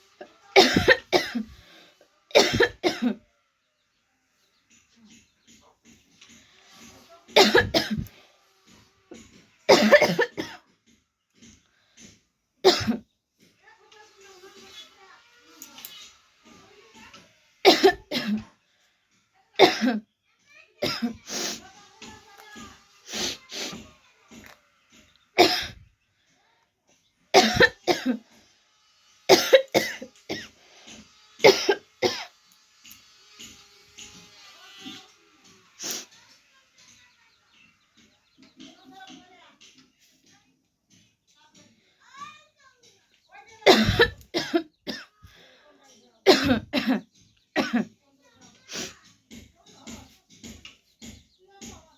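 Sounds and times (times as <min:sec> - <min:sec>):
woman coughing: 0:00.5 - 0:01.7, 0:02.3 - 0:03.2, 0:07.4 - 0:08.1, 0:09.7 - 0:10.6, 0:12.6 - 0:13.0, 0:17.6 - 0:18.5, 0:19.6 - 0:20.0, 0:20.8 - 0:21.6, 0:25.4 - 0:25.8, 0:27.3 - 0:28.2, 0:29.3 - 0:30.5, 0:31.4 - 0:32.3, 0:43.6 - 0:45.2, 0:46.2 - 0:47.9.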